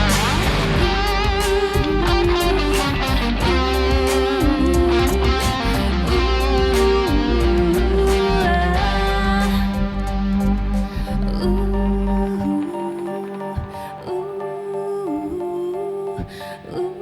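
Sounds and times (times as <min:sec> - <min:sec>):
drum hits: 0:00.0 - 0:07.3
steady bass: 0:00.0 - 0:12.5
bending lead guitar notes: 0:00.0 - 0:14.2.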